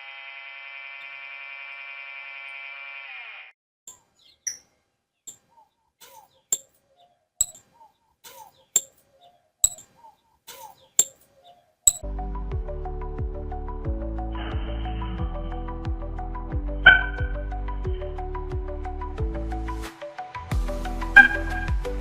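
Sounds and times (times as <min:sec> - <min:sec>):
faint soft bird calls: 0:03.9 - 0:12.0
small birds chirping: 0:03.9 - 0:12.0.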